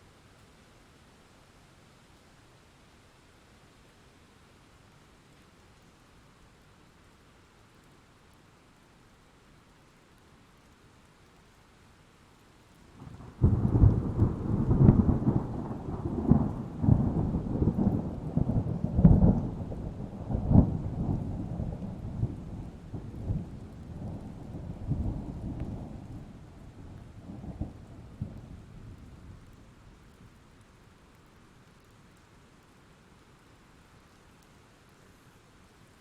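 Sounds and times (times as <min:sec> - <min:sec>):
thunder crack and rumble: 0:13.0 - 0:29.6.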